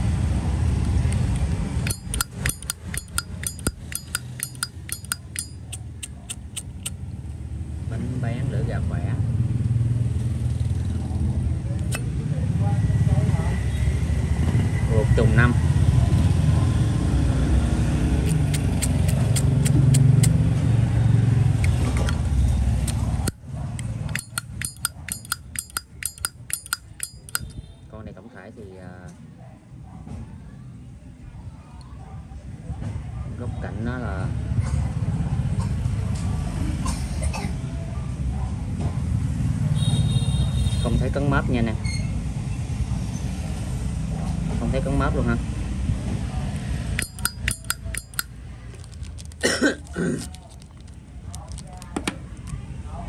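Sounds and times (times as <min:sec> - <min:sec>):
low rumble of passing traffic: 0:00.0 - 0:53.0
lighter lid clicking open and shut: 0:01.9 - 0:06.9, 0:18.2 - 0:20.3, 0:24.1 - 0:27.5, 0:47.0 - 0:48.3.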